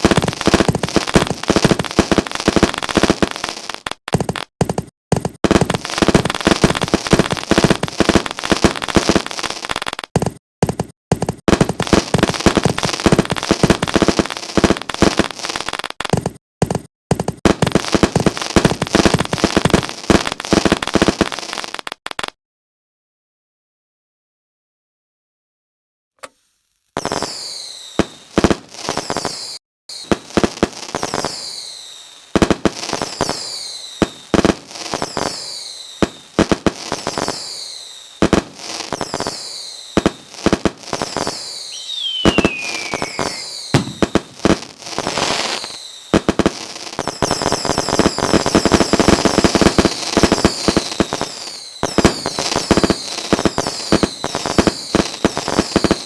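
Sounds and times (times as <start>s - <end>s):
fireworks crackling: 0.0s - 16.4s, 17.1s - 22.4s, 26.2s - 56.0s
fireworks bangs and pops: 0.0s - 22.4s, 26.2s - 56.0s
falling firework whistle: 26.9s - 28.4s, 29.0s - 30.2s, 31.0s - 32.4s, 33.0s - 34.4s, 35.0s - 40.3s, 41.0s - 46.4s, 47.0s - 56.0s.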